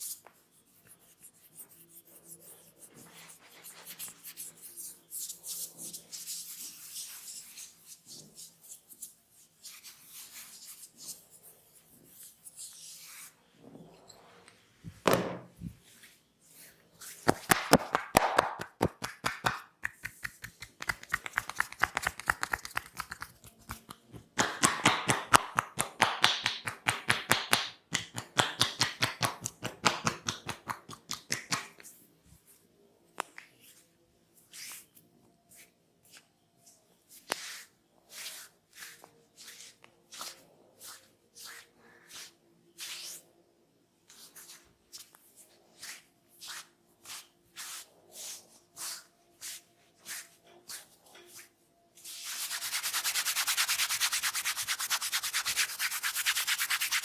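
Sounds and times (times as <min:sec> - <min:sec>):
palms rubbing skin and hair: 0:15.6 - 0:32.0, 0:44.1 - 0:57.0
rhythmic tapping with hands: 0:17.2 - 0:31.8.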